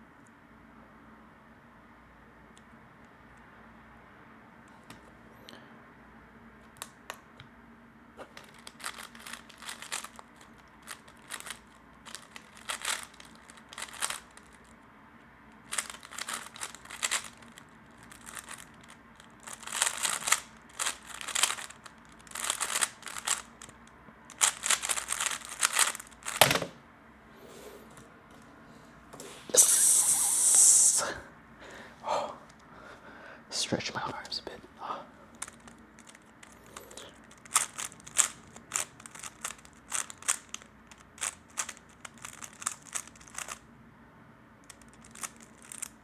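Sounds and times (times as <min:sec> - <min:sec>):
puzzle cube clicking and rattling: 0:08.2 - 0:14.8, 0:15.6 - 0:26.5, 0:35.3 - 0:43.6, 0:44.6 - 0:46.0.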